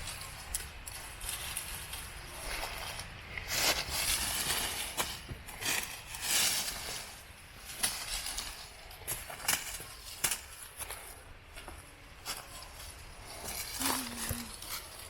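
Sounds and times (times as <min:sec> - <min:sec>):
dry sticks and leaves crackling: 0:00.0 - 0:15.0.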